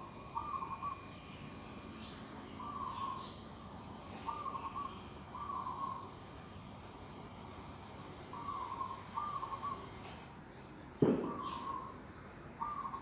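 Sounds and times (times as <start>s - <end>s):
small birds chirping: 0.0s - 12.0s, 12.6s - 13.0s
bird calling a short note: 11.3s - 11.9s.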